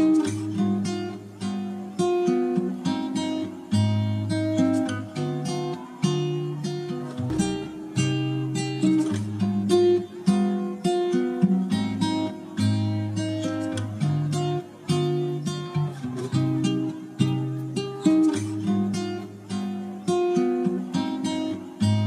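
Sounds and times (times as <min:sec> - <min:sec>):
acoustic guitar music: 0:00.0 - 0:22.0.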